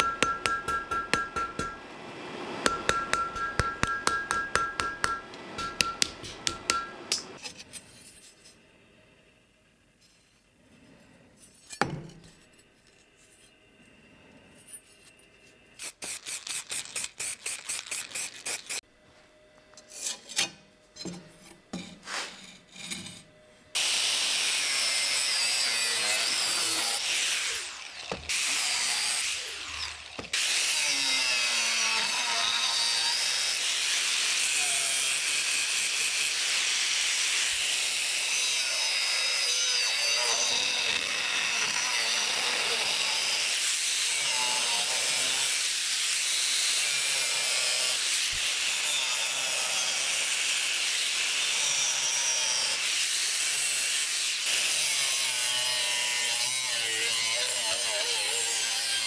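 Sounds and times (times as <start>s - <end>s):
hand tool strokes: 19.7s - 36.7s
power tool running loudly: 23.8s - 39.4s.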